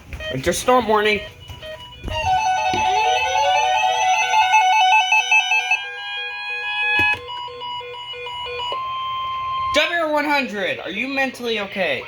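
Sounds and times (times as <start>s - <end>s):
steady high alarm tone: 0.1s - 10.3s
warbling electronic alarm tones: 0.2s - 9.9s.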